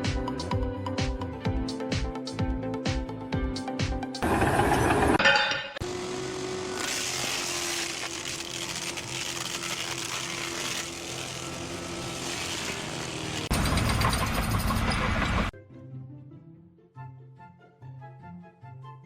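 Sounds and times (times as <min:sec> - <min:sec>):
harsh machine noise: 0:04.2 - 0:05.2, 0:05.8 - 0:15.5
machine motor humming: 0:05.8 - 0:15.5.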